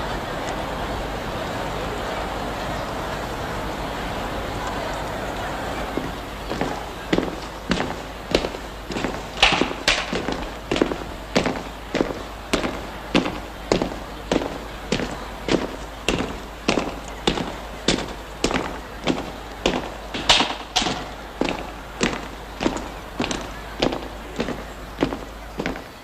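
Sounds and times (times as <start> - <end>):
boots stamping in step on pavement: 5.9 - 26.0.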